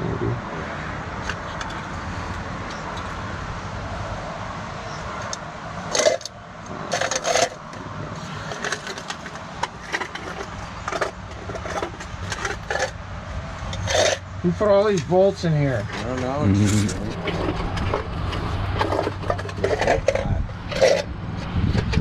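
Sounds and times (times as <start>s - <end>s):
metal tools clanking on metal: 5.0s - 13.0s, 13.7s - 14.2s, 15.7s - 21.1s
low engine hum: 9.1s - 22.0s.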